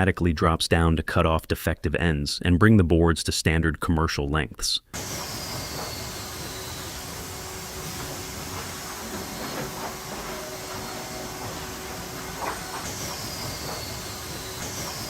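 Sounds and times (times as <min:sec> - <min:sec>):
high saw whine: 0:05.0 - 0:15.0
sawmill machinery din: 0:05.0 - 0:15.0.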